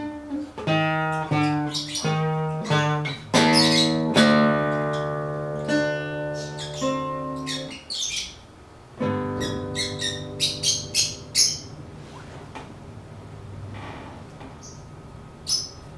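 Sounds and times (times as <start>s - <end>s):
acoustic guitar chords: 0.0s - 7.8s, 8.9s - 12.1s
birds squawking: 1.0s - 12.0s, 14.6s - 15.9s.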